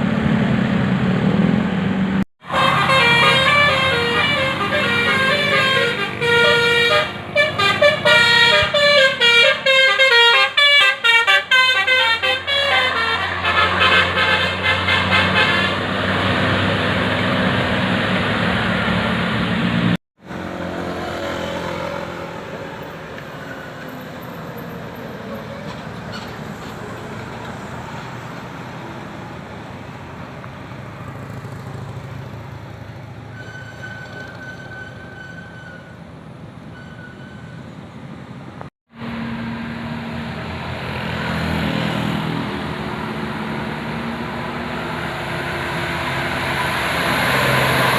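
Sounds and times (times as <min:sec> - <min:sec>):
bus engine running: 0:00.0 - 0:47.9
road traffic noise: 0:00.0 - 0:47.9
high horn tone: 0:02.4 - 0:16.0
melodic multi-tone bus horn: 0:02.4 - 0:16.6.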